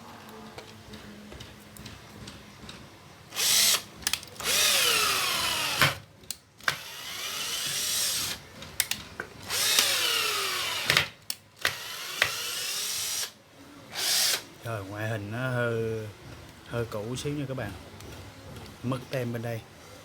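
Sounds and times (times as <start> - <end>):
cordless drill whirring: 3.3 - 6.0, 6.6 - 8.4, 9.4 - 14.5.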